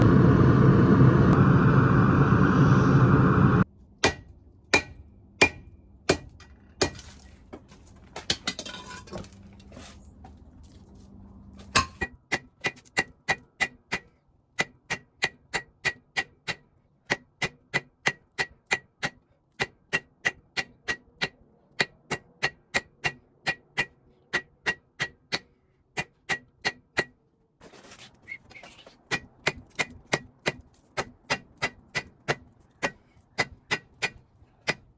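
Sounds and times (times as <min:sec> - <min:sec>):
loud steady rushing noise: 0:00.0 - 0:03.6
hammer striking steel on anvil: 0:04.0 - 0:07.0, 0:11.7 - 0:27.2, 0:29.1 - 0:34.9.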